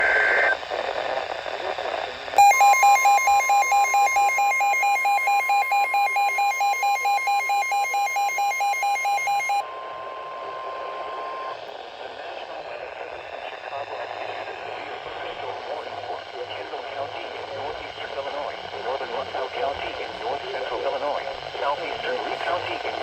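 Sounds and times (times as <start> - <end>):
radio hiss: 0.0 - 2.4, 9.6 - 23.0
rapid alarm beeps: 2.4 - 11.5
steady warning alarm tone: 2.4 - 11.5.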